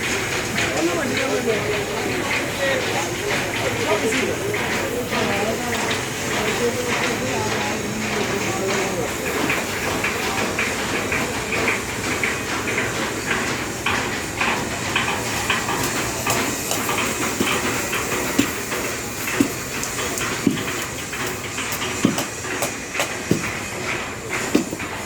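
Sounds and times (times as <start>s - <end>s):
steady background noise: 0.0s - 25.0s
metal knocks and clanks: 8.1s - 25.0s.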